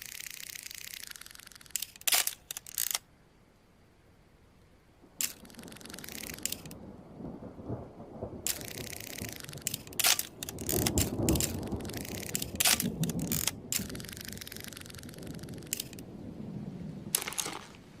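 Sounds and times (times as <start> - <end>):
camera shutter clicks: 0.0 - 3.0, 5.2 - 6.7, 8.5 - 16.0, 17.2 - 17.8
film-advance ratcheting clatter: 0.0 - 3.0, 5.2 - 6.8, 8.4 - 16.0, 17.2 - 17.8
camera motor whir: 5.2 - 6.7, 8.5 - 16.0.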